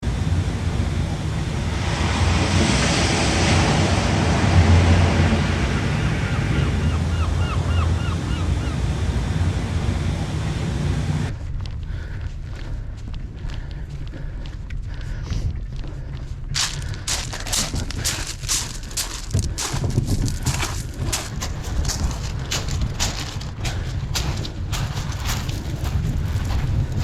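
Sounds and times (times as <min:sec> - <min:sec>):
wind buffeting microphone: 0:00.0 - 0:27.0
surf washing on shore: 0:01.5 - 0:07.1.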